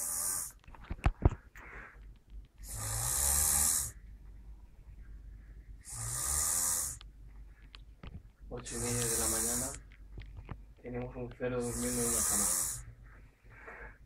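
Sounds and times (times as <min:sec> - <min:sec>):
person snoring: 0:00.0 - 0:00.6, 0:02.6 - 0:04.0, 0:05.8 - 0:07.0, 0:08.6 - 0:09.8, 0:11.6 - 0:12.8.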